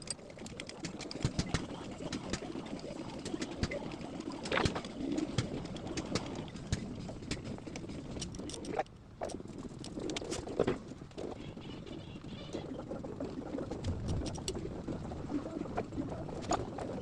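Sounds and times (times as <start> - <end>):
dove cooing: 11.2 - 17.0.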